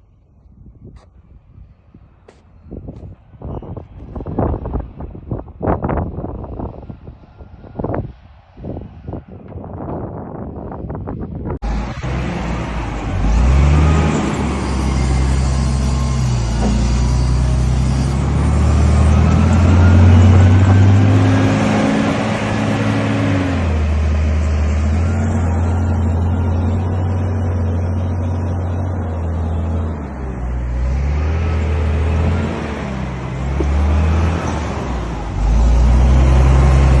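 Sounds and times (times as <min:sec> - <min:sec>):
heavy diesel engine revving: 0:11.6 - 0:37.0.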